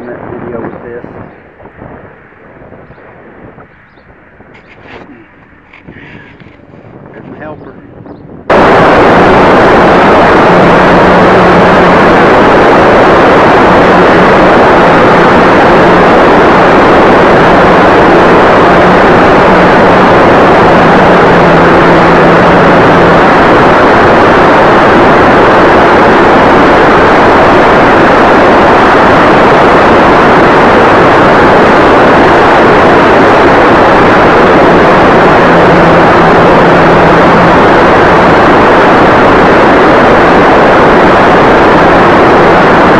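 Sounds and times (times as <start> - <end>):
faint steady hum: 0.0 - 42.9
wind rush: 0.0 - 42.9
electric motor with propeller: 9.1 - 42.9.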